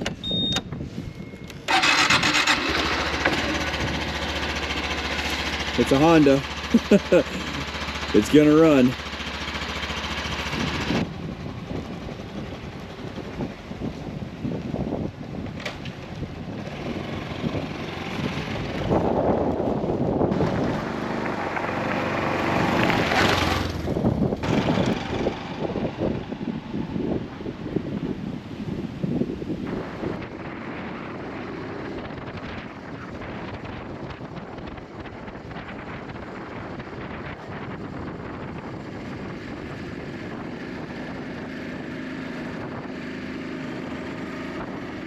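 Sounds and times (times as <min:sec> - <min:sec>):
wind buffeting microphone: 0:00.0 - 0:45.0
small motorcycle engine running: 0:01.7 - 0:15.0, 0:15.6 - 0:28.0, 0:29.7 - 0:45.0.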